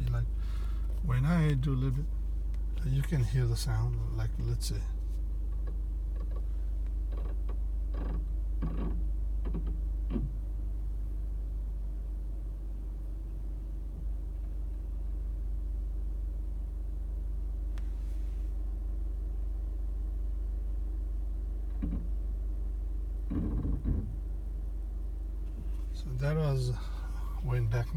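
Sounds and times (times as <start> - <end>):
creaking clicks of brakes: 0.0 - 10.7, 17.7 - 18.6, 21.5 - 22.4, 23.1 - 24.5, 25.4 - 27.9
car engine idling: 0.0 - 27.9.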